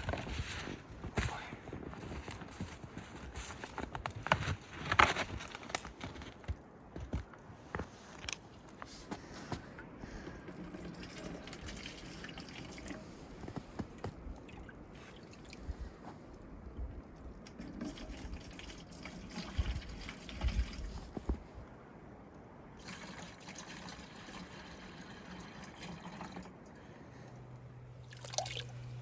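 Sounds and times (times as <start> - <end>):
water trickling and dripping: 10.5 - 21.1, 28.0 - 29.0.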